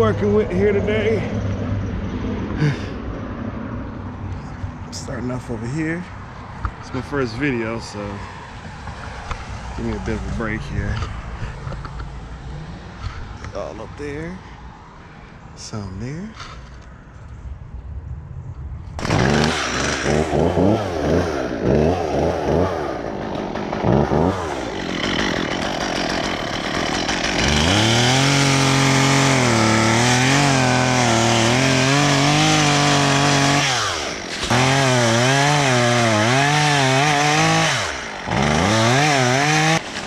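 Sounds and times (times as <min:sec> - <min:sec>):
chainsaw engine revving: 0:19.0 - 0:40.0.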